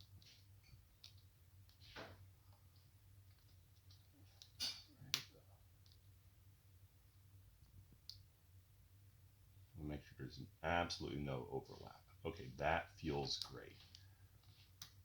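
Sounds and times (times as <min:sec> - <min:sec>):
faint clicks and rustles: 0:00.0 - 0:06.2, 0:13.1 - 0:15.0
low room hum: 0:00.0 - 0:15.0.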